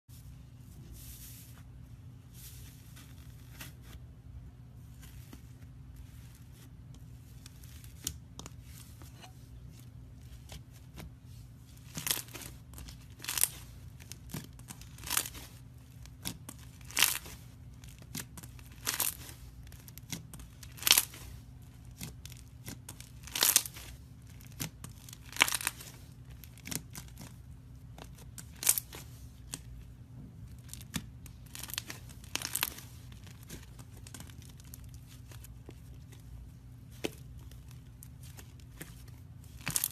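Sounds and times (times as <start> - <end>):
slime crust crackling: 11.8 - 29.7, 30.5 - 39.9.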